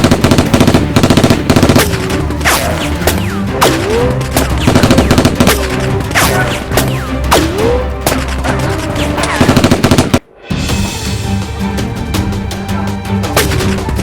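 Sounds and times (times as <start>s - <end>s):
gunfire sound effects: 0.0s - 8.3s
driving action music: 0.0s - 14.0s.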